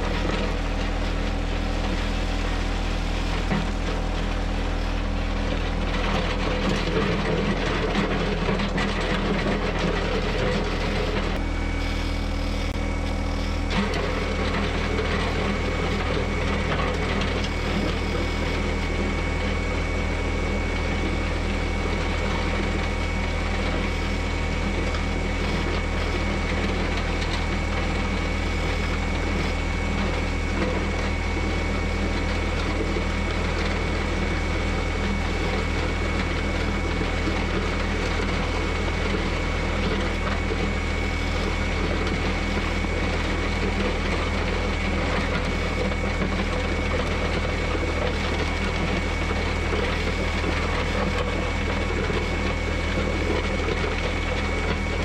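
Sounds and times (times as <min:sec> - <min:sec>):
tractor diesel engine running: 0:00.0 - 0:55.0
thin high whine: 0:11.4 - 0:14.4.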